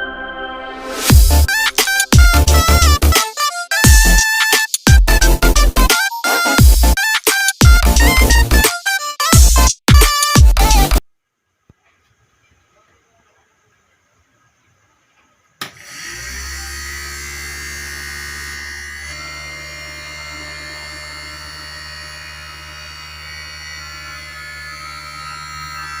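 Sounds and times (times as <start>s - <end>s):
fan motor buzzing hum and whine: 15.7s - 26.0s.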